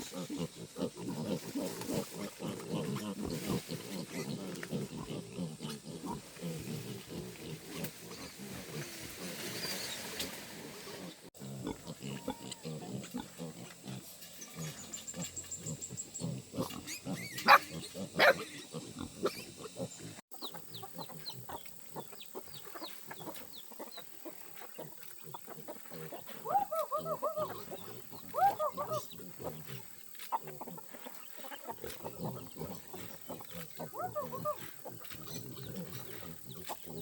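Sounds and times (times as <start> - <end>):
pigs grunting: 0.0 - 37.0
pig squealing: 11.4 - 14.0, 14.6 - 20.0, 25.4 - 29.8, 31.8 - 36.7.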